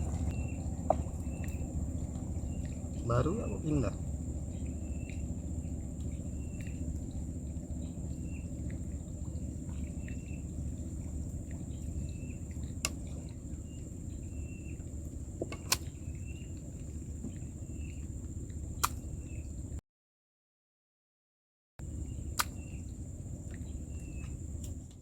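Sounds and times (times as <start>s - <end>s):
low rumble: 0.0s - 19.8s
short insect chirps: 0.2s - 14.9s, 21.9s - 24.8s
sharp clicks: 22.4s - 22.6s.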